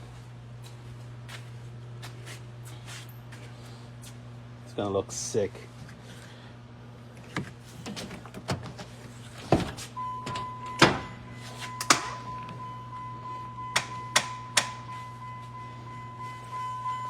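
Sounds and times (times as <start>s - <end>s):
steady low hum: 0.0s - 17.0s
steady high tone: 10.0s - 17.0s
sharp knocks and clanks: 13.7s - 14.8s.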